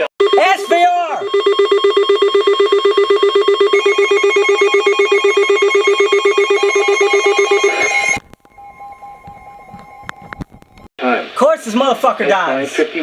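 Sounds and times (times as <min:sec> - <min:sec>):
higher tone: 0:00.0 - 0:10.9
pulsing alert tone: 0:00.2 - 0:10.1.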